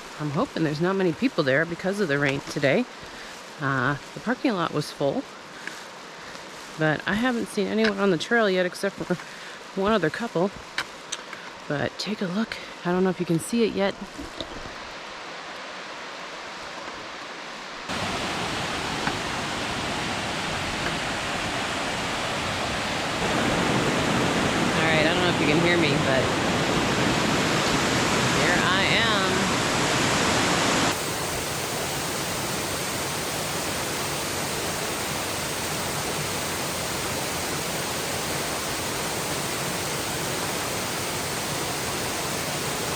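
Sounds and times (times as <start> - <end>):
waterfall rushing: 14.6 - 42.9.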